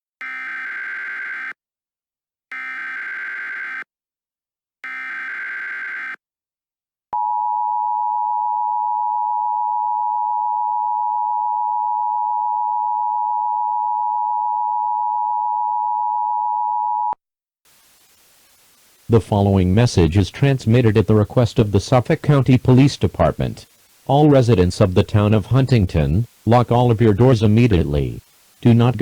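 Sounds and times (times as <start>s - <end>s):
digital data bursts: 17.8s - 29.0s
steady attention tone: 19.1s - 29.0s.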